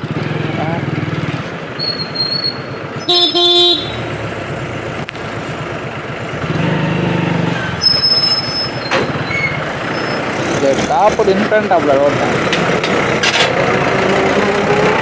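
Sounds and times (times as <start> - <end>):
engine running: 0.0 - 15.0
vehicle horn blast: 3.0 - 4.2.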